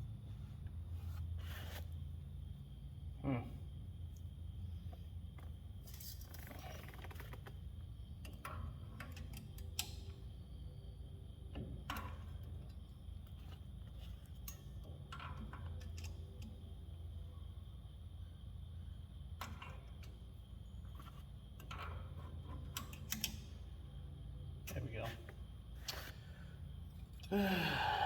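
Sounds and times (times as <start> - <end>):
steady low hum: 0.0 - 6.1, 7.6 - 28.0
metallic clicks of tools and parts: 8.2 - 10.2, 14.2 - 16.6, 21.6 - 23.7.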